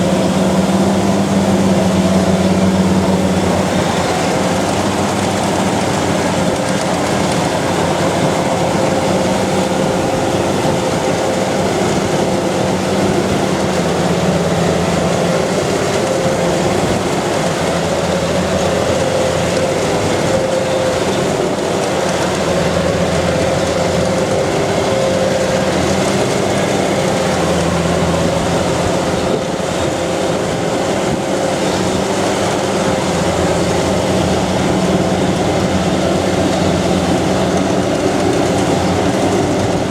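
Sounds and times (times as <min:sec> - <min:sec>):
combine harvester droning: 0:00.0 - 0:39.9.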